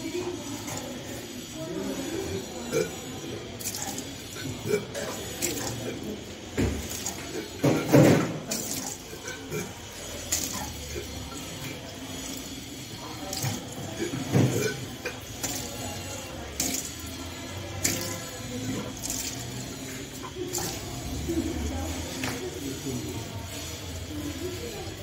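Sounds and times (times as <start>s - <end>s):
person retching: 2.2s - 16.0s, 17.8s - 19.4s, 20.1s - 21.0s
water splashing down: 2.2s - 22.6s.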